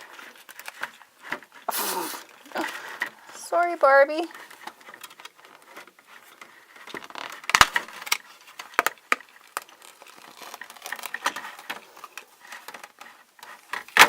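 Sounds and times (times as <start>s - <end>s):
toy packaging crinkling: 4.3s - 13.5s.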